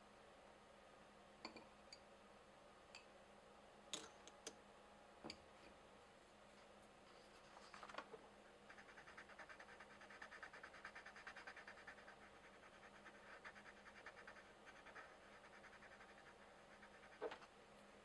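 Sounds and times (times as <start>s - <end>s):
coloured pencil scratching on paper: 8.7s - 17.5s.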